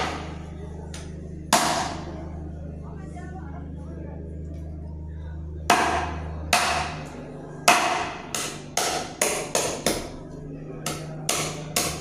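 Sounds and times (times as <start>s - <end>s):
blade chopping meat and bone: 1.5s - 2.0s, 5.7s - 7.0s, 7.7s - 10.1s, 10.9s - 12.0s.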